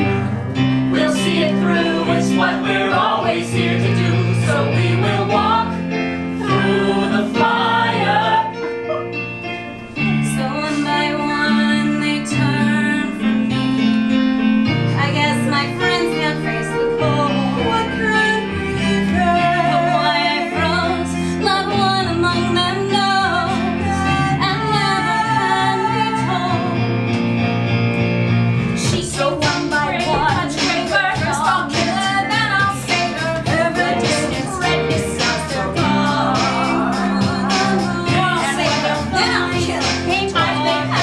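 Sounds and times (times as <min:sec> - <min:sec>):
ensemble singing: 0:00.0 - 0:27.2, 0:28.5 - 0:41.0
band accompaniment: 0:27.0 - 0:41.0
steady drum beat: 0:28.8 - 0:41.0.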